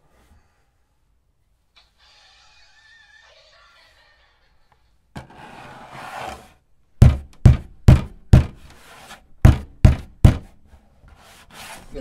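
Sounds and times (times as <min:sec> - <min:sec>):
scratchy rustling: 0:11.1 - 0:12.0.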